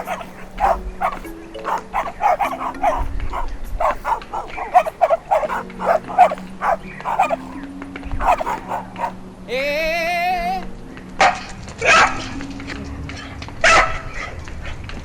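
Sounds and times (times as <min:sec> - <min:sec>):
dog whining: 0:00.0 - 0:07.6, 0:08.2 - 0:09.2
dogs barking and yelping: 0:00.0 - 0:09.2.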